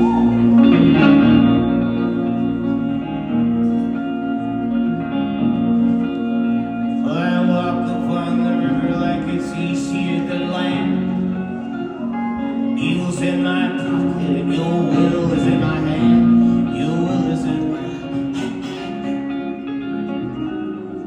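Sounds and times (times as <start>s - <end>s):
fingerpicked acoustic guitar: 0.0s - 21.0s
man singing: 7.0s - 12.0s, 12.6s - 19.4s.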